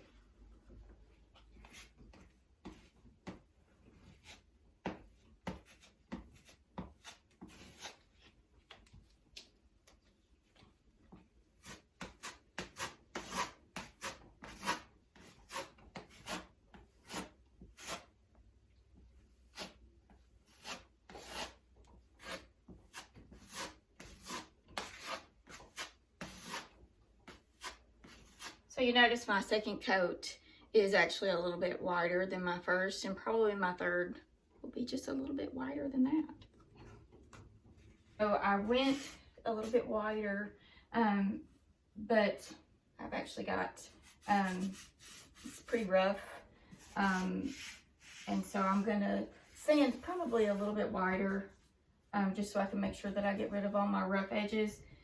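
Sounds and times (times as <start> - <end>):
putty knife scraping drywall: 4.0 - 8.3, 11.6 - 18.2, 19.5 - 19.8, 20.4 - 28.7, 43.9 - 45.9, 46.7 - 50.7.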